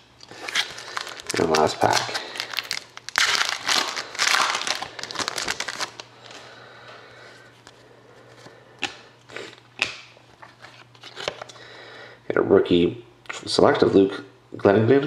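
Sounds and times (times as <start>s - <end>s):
foil wrapper tearing and crinkling: 0.3s - 6.4s.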